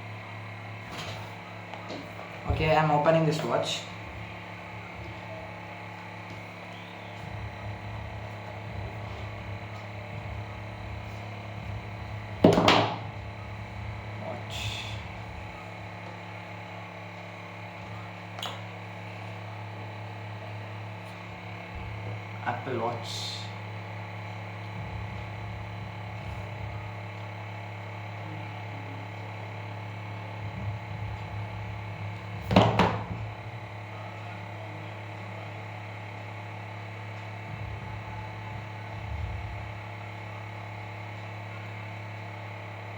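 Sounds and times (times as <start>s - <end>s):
low electrical hum: 0.0s - 42.9s.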